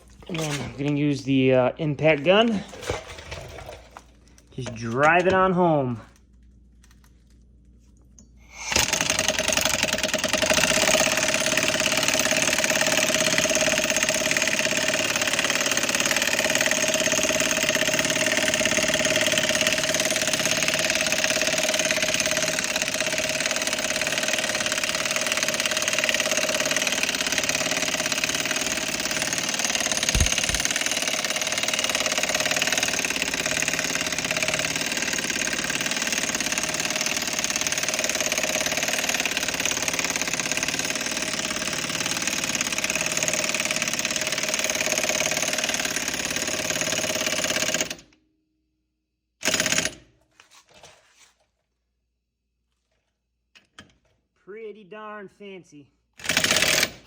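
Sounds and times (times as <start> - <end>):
impact gun hammering: 30.0 - 30.8.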